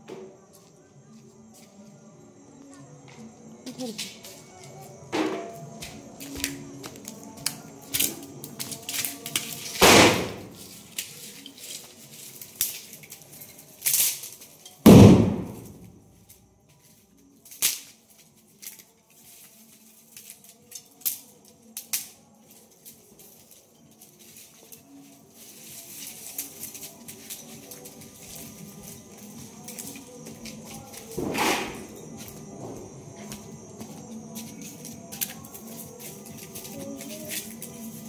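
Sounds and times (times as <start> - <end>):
firecrackers cracking and banging: 6.4 - 16.0, 25.5 - 32.1
small firecracker pops: 7.4 - 11.1, 13.8 - 16.0, 17.5 - 18.0, 30.5 - 31.9.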